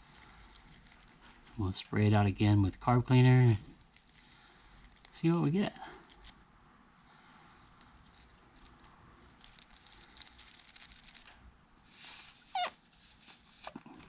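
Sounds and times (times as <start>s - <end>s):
high squeak falling in pitch: 12.5s - 12.8s.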